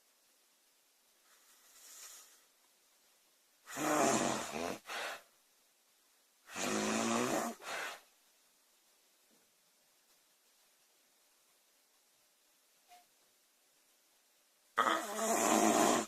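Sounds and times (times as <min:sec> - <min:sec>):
girl snoring: 0:03.7 - 0:05.2, 0:06.5 - 0:08.0, 0:14.8 - 0:16.0.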